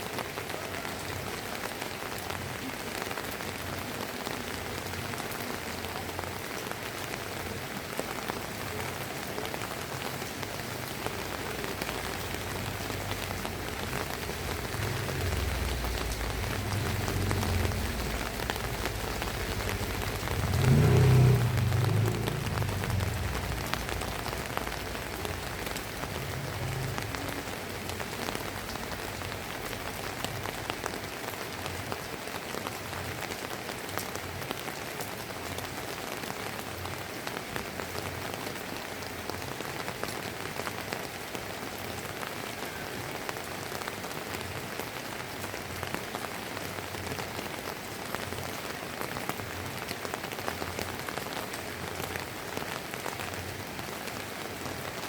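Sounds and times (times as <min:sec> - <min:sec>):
rain on hard surfaces: 0:00.0 - 0:55.0
low rumble: 0:13.4 - 0:27.2.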